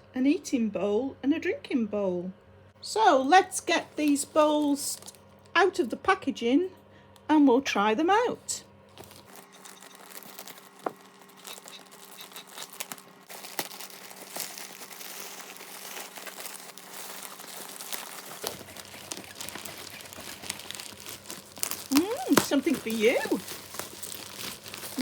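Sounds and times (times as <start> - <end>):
packaging crinkling: 3.6 - 5.5, 8.9 - 25.0.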